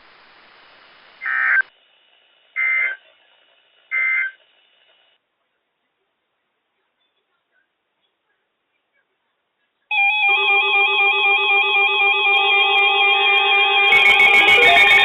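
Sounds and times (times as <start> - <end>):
faint radio hiss: 0.0 - 9.9, 13.9 - 15.0
buzzy warbling data bursts: 13.8 - 15.0.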